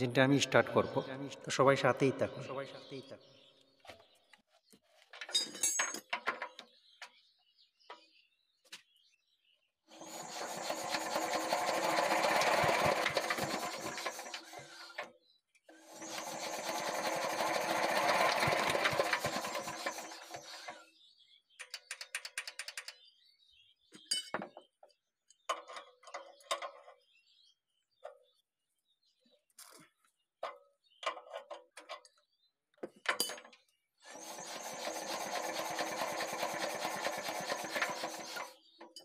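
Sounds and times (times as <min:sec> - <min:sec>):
diesel engine cranking: 0:09.9 - 0:15.1, 0:15.7 - 0:20.9, 0:34.0 - 0:38.7
rapid ticking: 0:10.0 - 0:15.0, 0:15.9 - 0:20.8, 0:34.1 - 0:38.6.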